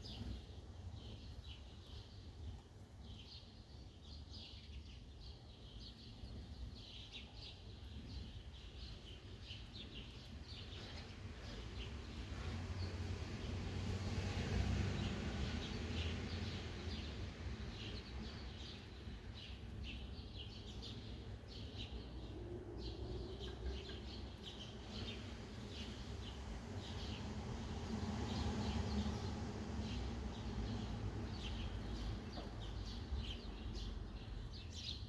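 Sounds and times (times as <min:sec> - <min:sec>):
sparrows chirping: 0:00.0 - 0:35.0
city background rumble: 0:07.8 - 0:35.0.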